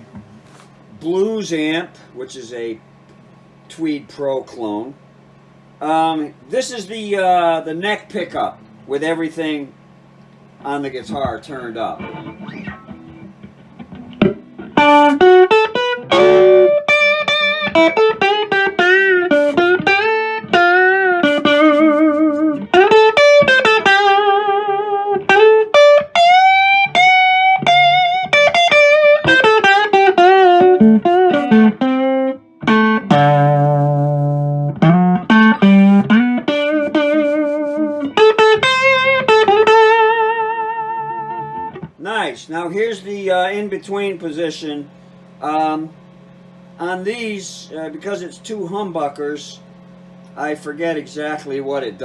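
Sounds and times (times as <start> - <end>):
electric guitar lead lines: 0.0 - 52.0
electric guitar chord ringing: 6.1 - 42.0.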